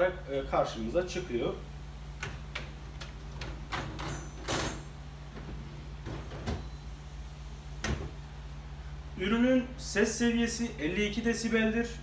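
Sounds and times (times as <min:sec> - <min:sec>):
steady low hum: 0:00.0 - 0:12.0
dishwasher racks clicking and knocking: 0:02.2 - 0:06.7.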